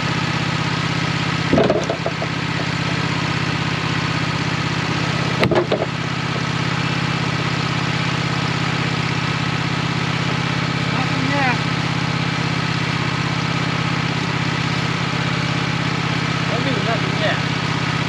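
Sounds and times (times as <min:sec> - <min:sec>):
sawmill engine running: 0:00.0 - 0:18.0
sharp knocks: 0:01.5 - 0:02.7, 0:05.4 - 0:06.0.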